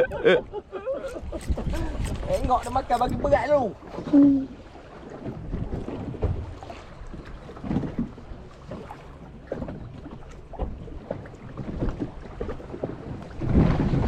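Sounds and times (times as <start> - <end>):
wind buffeting microphone: 0.0 - 4.0, 11.5 - 14.0
water slapping hull: 0.0 - 14.0.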